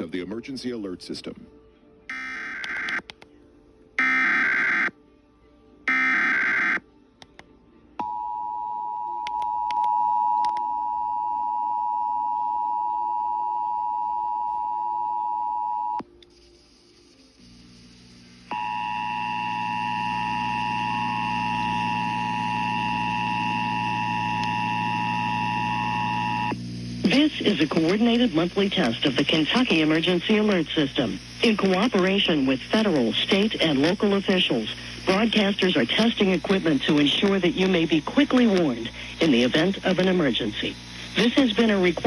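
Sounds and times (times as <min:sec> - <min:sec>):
buzzy digital data bursts: 0:16.3 - 0:42.0
low hum: 0:17.4 - 0:42.0.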